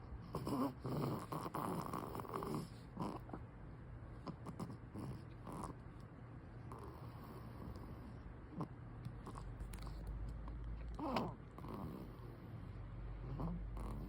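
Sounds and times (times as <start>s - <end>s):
baby snoring: 0.2s - 3.4s, 10.9s - 12.6s, 13.2s - 14.0s.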